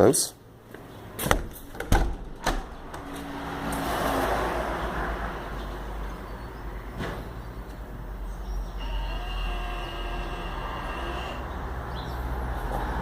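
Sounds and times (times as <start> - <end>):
door knocks and clicks: 1.2 - 3.3.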